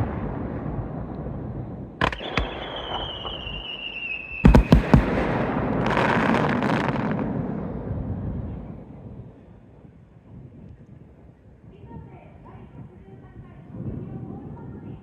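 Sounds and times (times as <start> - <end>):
whistling firework shell: 2.0 - 5.9
firework bangs: 2.0 - 8.9.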